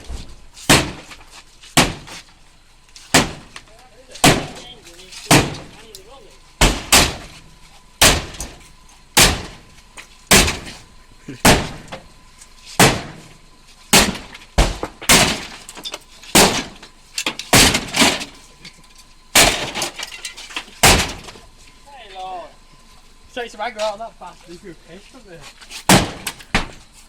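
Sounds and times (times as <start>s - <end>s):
sledgehammer striking car body: 0.0s - 2.2s, 3.1s - 3.6s, 4.2s - 5.8s, 6.6s - 7.4s, 8.0s - 8.6s, 9.2s - 9.7s, 10.3s - 10.8s, 11.4s - 12.1s, 12.8s - 18.4s, 19.3s - 21.4s, 25.8s - 26.8s
glass cracking and breaking: 19.4s - 21.4s.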